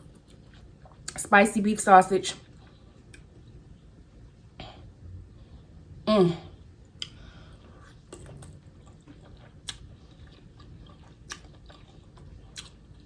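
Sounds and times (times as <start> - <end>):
person chewing food: 0.0 - 1.2, 2.4 - 5.8, 6.5 - 13.0
wet mouth clicks and smacks: 8.1 - 9.9, 11.0 - 12.8.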